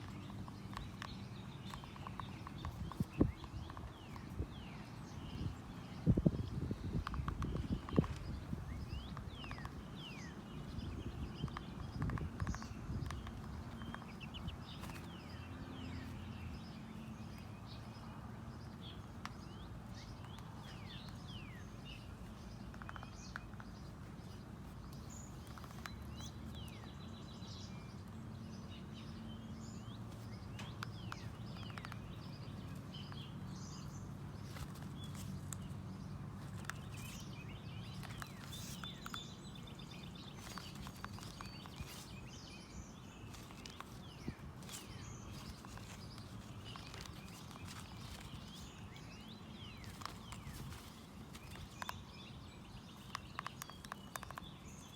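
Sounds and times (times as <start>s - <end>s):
small birds chirping: 0.0s - 54.9s
hen beak tapping clicks: 53.0s - 54.9s.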